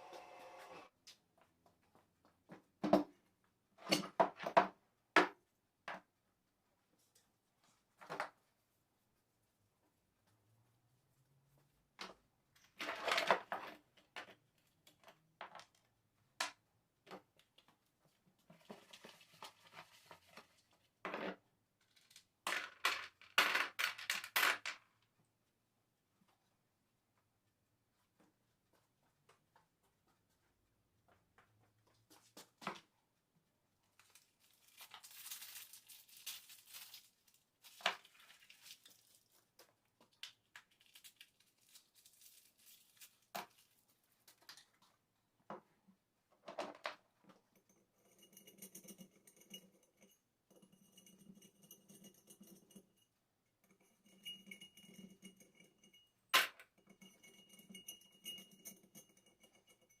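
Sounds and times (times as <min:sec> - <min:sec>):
faint whirr with high tone: 0:00.0 - 0:00.9.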